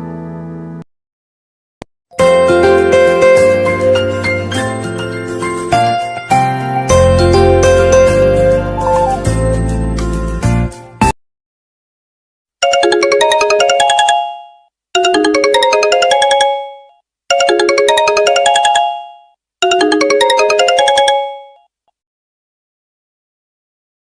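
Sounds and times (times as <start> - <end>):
mobile phone ringtone: 12.6 - 21.7.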